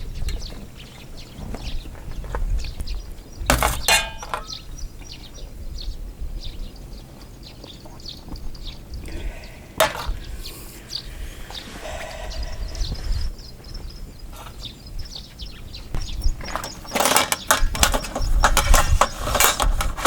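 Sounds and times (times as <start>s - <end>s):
wind rumble on microphone: 0.0s - 20.0s
faint chirps: 7.5s - 17.0s
hard objects knocking together: 9.8s - 10.2s.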